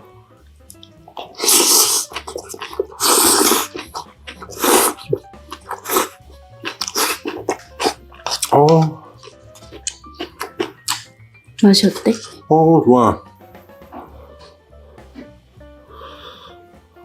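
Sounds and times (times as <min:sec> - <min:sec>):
crunchy chewing: 0:00.7 - 0:12.5
loud slurping: 0:00.7 - 0:12.6.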